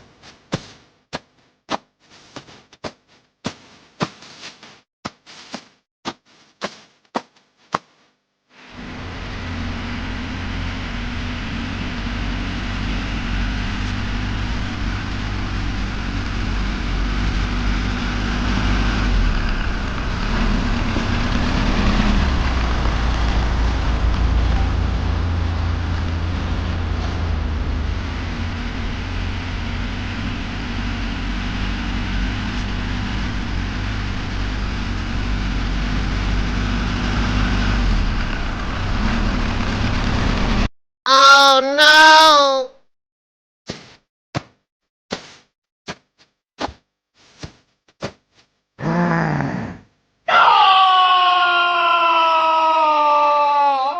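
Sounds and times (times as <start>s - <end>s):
vehicle engine running with rattle: 8.6s - 40.7s.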